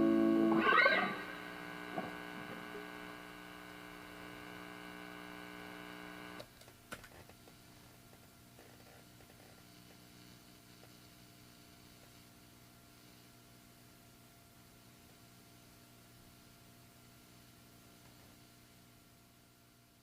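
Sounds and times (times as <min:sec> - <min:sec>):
electric guitar chord ringing: 0:00.0 - 0:03.1
low amplifier hum: 0:00.0 - 0:06.5.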